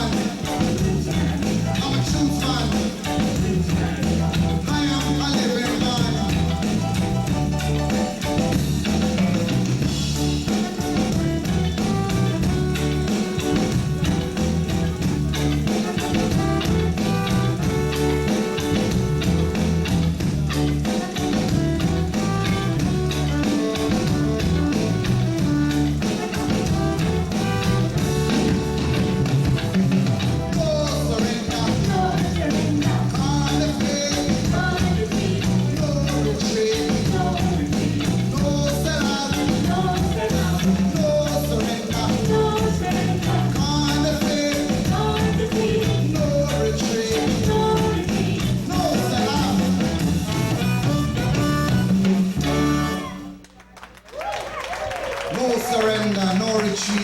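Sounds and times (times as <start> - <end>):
person singing: 0.0 - 8.4, 20.8 - 29.4, 30.5 - 50.4
live reggae band playing: 0.0 - 53.8.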